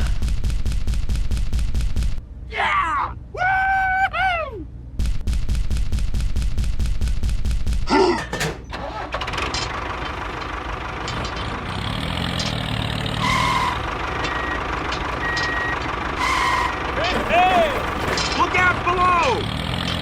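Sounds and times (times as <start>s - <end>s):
vehicle engine chugging: 7.9s - 20.0s.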